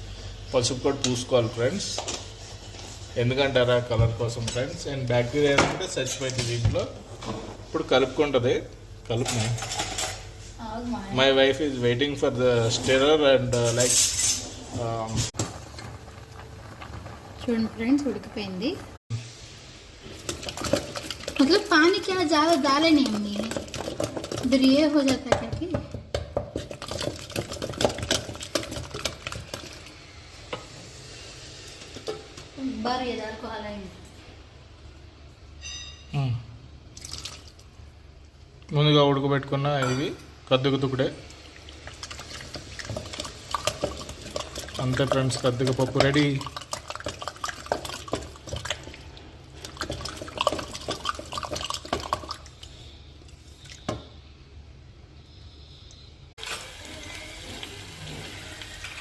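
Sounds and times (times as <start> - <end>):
spoon stirring wet dal: 20.1 - 25.5, 26.2 - 29.9, 40.6 - 53.8.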